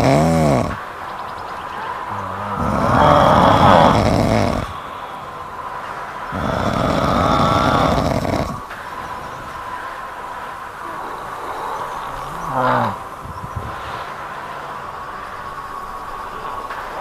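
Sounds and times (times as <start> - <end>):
kitten snoring: 0.0 - 0.8, 2.1 - 5.0, 6.3 - 9.3, 11.4 - 13.8.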